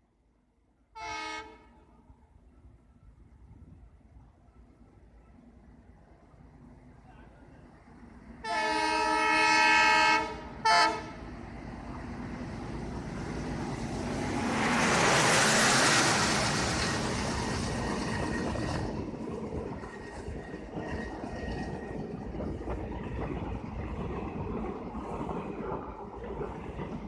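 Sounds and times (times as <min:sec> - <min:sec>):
train rumble and wheel clatter: 0:00.0 - 0:27.0
locomotive horn blasts: 0:01.0 - 0:01.8, 0:08.4 - 0:11.2.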